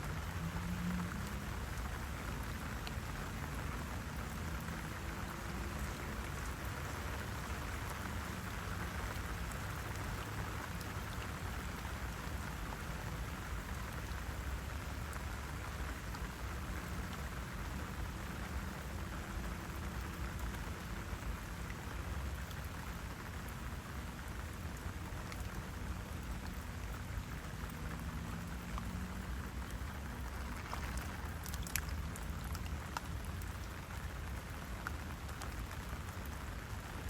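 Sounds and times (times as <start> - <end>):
rain on leaves: 0.0 - 37.0
drops ticking: 29.7 - 33.6.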